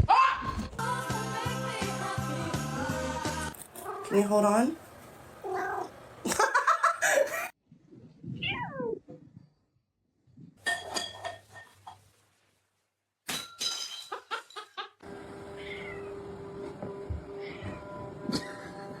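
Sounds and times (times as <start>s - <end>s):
cat meowing and yowling: 8.4s - 9.0s, 15.6s - 16.1s.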